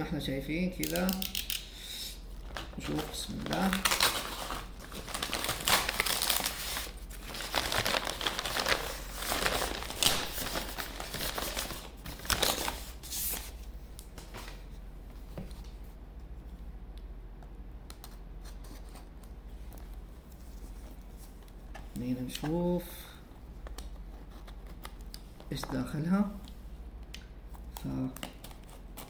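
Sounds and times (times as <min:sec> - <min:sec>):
packaging rustling and tearing: 0:02.4 - 0:13.6.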